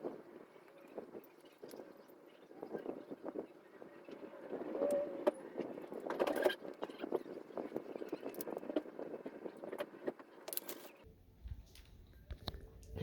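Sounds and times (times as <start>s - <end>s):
phone parts clicking and scraping: 9.4s - 11.0s.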